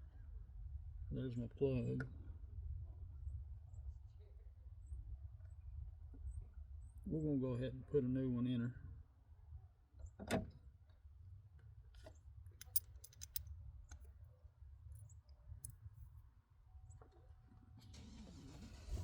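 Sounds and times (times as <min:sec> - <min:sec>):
hand tools clicking and tapping: 0:12.6 - 0:13.4.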